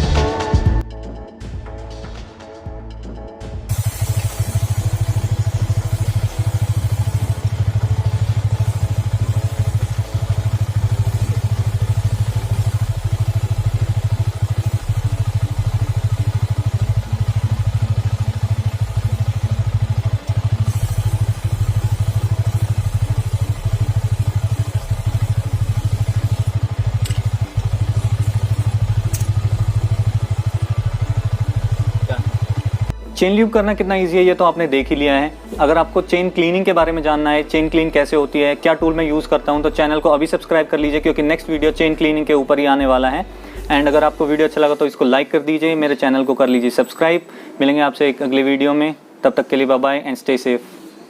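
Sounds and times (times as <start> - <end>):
motorcycle engine idling: 3.7 - 33.0, 34.1 - 44.8.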